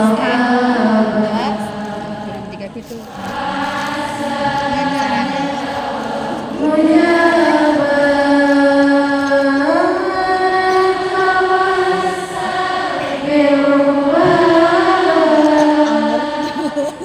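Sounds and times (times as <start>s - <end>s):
person chanting a melody: 0.0s - 17.0s.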